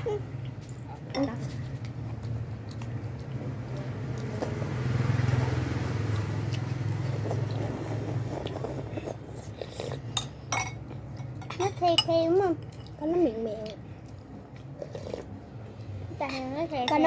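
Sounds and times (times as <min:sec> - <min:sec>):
motor vehicle passing: 0:00.0 - 0:10.2.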